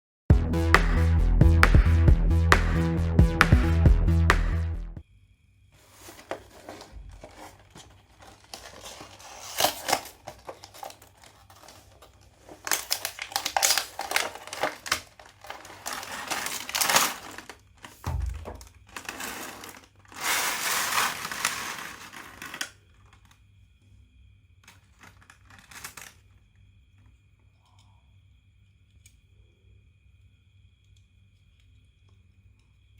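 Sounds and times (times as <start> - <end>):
packaging crinkling and tearing: 6.1 - 23.3, 24.9 - 26.2
low thud: 18.1 - 18.8.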